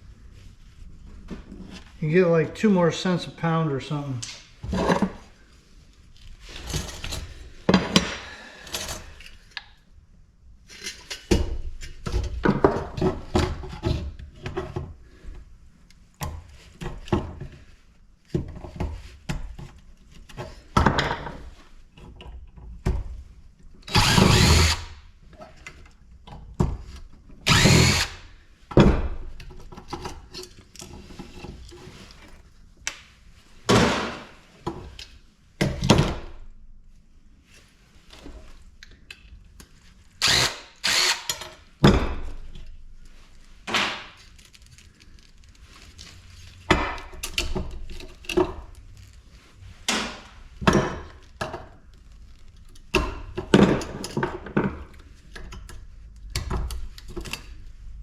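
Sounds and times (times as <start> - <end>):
power tool running: 23.9 - 25.0, 27.4 - 28.3, 40.2 - 41.4.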